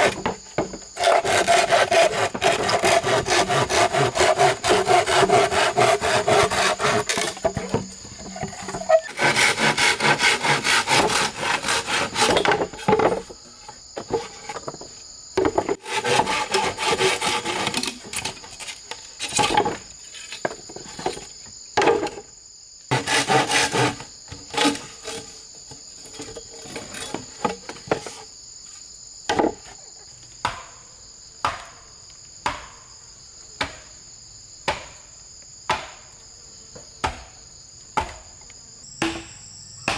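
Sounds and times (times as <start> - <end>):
hand saw cutting bamboo: 0.0 - 0.4, 1.0 - 13.2, 15.8 - 19.7, 22.9 - 25.4, 26.0 - 28.0
insects droning: 0.0 - 39.9
sharp blows on wood: 1.0 - 7.5, 39.0 - 39.9.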